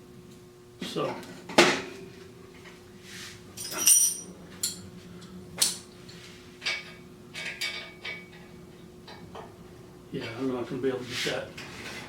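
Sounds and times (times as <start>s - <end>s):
metal tool clinking on wheel hub: 3.6s - 4.8s.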